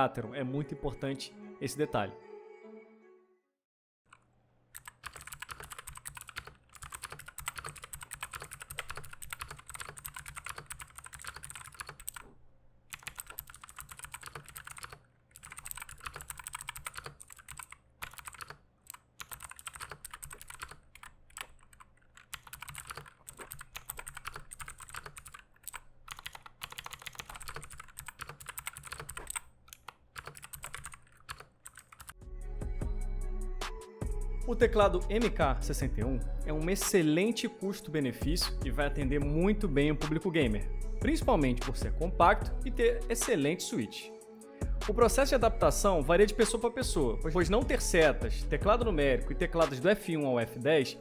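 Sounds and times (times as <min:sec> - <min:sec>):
fast clicky keyboard typing: 0:04.8 - 0:12.3, 0:12.9 - 0:32.2.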